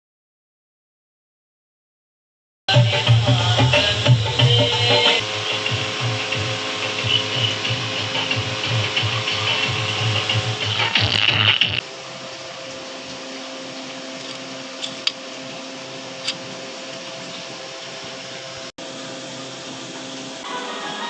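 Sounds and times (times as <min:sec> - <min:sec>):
music: 0:02.7 - 0:11.8, 0:20.4 - 0:21.0
amplifier hiss: 0:02.7 - 0:12.6
buzzing hum: 0:02.7 - 0:21.0.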